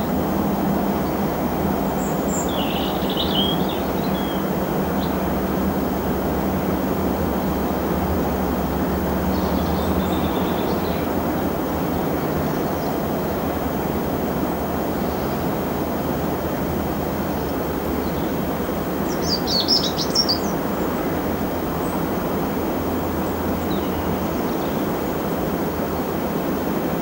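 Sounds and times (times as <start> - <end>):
bird chirps: 2.3 - 4.4, 19.1 - 20.5.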